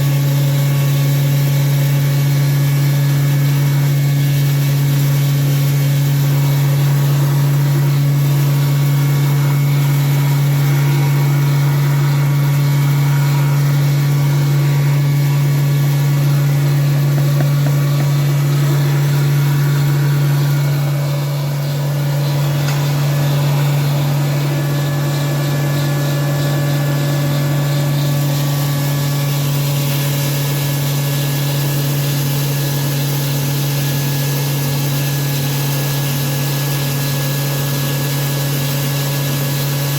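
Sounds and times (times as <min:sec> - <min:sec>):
disk mill grinding: 0:03.1 - 0:31.3.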